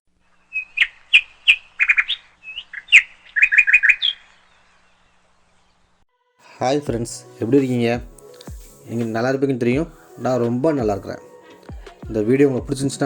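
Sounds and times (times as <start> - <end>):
bird chirping: 0.2 - 6.0.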